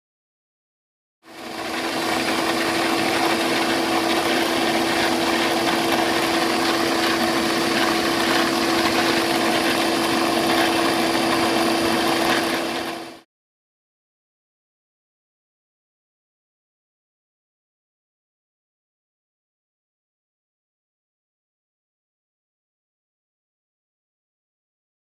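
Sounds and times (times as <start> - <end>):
baby food maker humming and hissing: 1.3 - 13.2.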